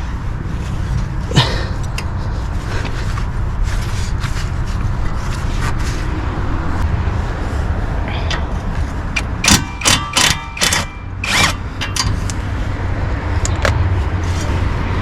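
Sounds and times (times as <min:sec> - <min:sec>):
steady low rumble: 0:00.0 - 0:15.0
light clicks and scrapes of tools: 0:08.2 - 0:12.5, 0:13.4 - 0:14.7.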